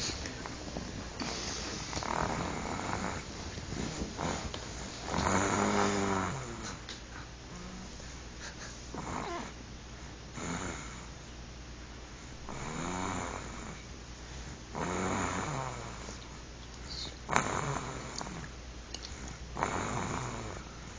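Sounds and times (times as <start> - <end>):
boy snoring: 1.2 - 3.3, 4.2 - 6.8, 8.5 - 9.6, 12.5 - 13.8, 14.7 - 16.2, 16.9 - 18.5, 19.6 - 20.7.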